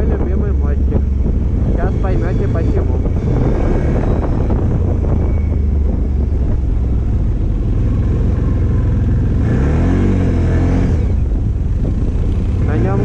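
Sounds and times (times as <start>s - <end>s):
atv engine revving: 5.8s - 13.0s.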